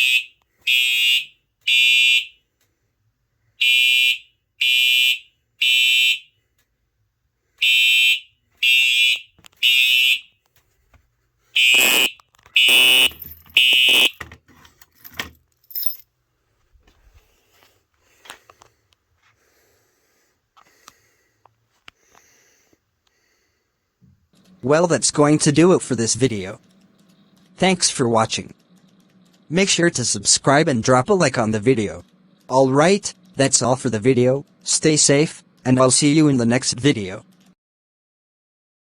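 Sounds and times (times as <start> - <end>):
harsh alarm horn blasts: 0.0 - 2.4, 3.6 - 6.4, 7.6 - 10.4, 11.6 - 14.2.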